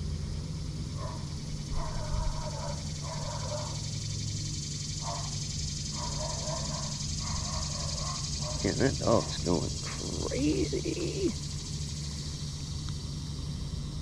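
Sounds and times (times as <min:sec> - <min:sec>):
dog barking: 0:01.0 - 0:03.8, 0:05.0 - 0:09.6.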